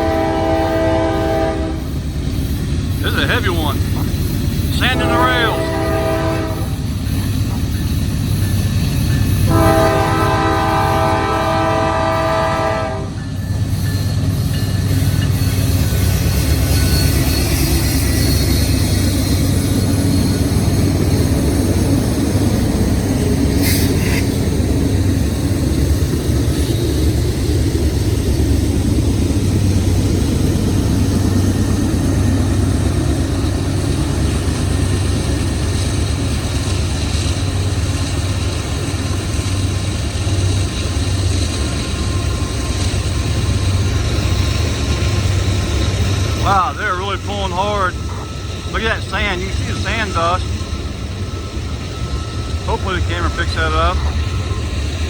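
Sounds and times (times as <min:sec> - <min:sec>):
train horn: 0:00.0 - 0:02.0, 0:04.8 - 0:06.9, 0:09.4 - 0:13.2
diesel locomotives rumbling: 0:00.0 - 0:55.0.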